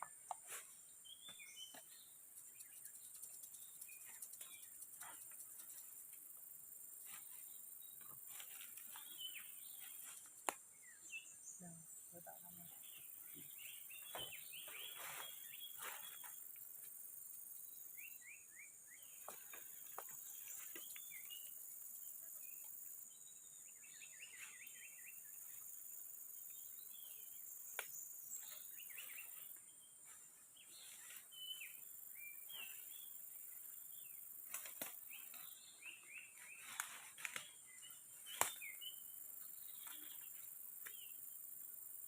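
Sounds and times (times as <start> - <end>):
birds chirping: 0.0 - 41.6.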